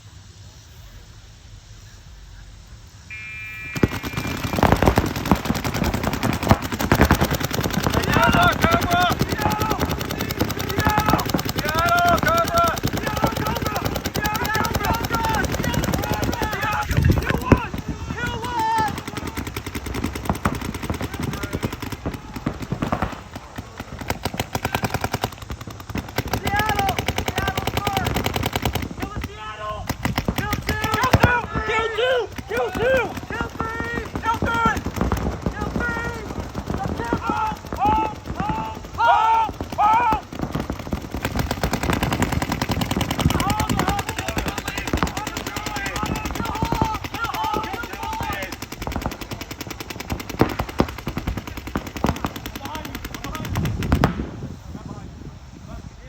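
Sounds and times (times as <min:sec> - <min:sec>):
electronic buzzer tone: 0:03.1 - 0:04.3
players shouting: 0:03.1 - 0:53.8
paintball markers firing: 0:03.6 - 0:54.4.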